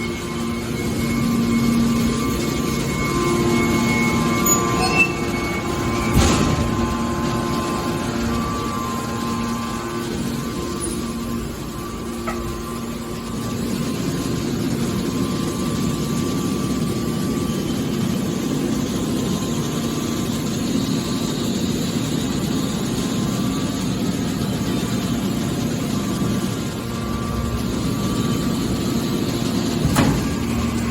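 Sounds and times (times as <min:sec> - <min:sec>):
hydraulic baler hum: 0:00.0 - 0:15.8, 0:26.4 - 0:30.9.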